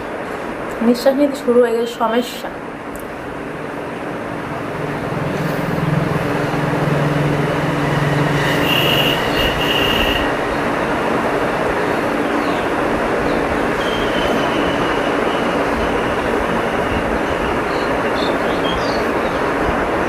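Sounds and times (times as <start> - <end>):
high-pitched whine: 3.6 - 10.6.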